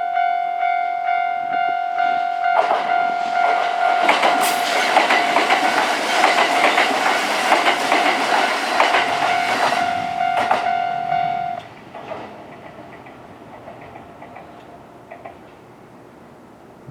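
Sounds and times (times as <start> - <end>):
level crossing bell ringing: 0.0 - 4.4, 9.2 - 11.6
train wheels clacking over rail joints: 2.6 - 10.9, 11.6 - 15.7.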